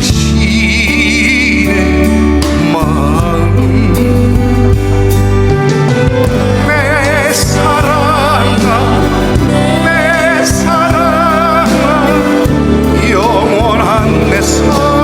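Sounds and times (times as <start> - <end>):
backing band: 0.0 - 15.0
pop ballad singing with vibrato: 0.0 - 15.0.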